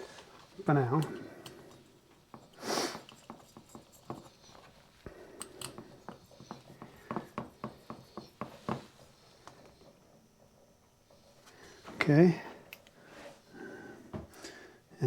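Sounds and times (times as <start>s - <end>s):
screwdriver clicking: 5.4s - 7.2s.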